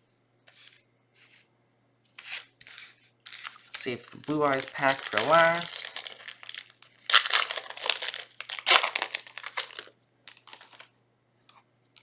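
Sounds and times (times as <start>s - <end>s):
foil wrapper crinkling and tearing: 2.2s - 10.9s.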